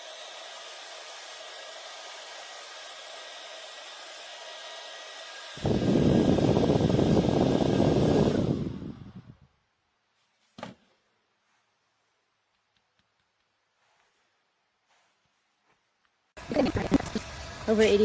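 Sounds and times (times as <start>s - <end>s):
handheld fan whirring: 0.0s - 9.5s, 16.4s - 18.0s
wind buffeting microphone: 5.6s - 9.5s.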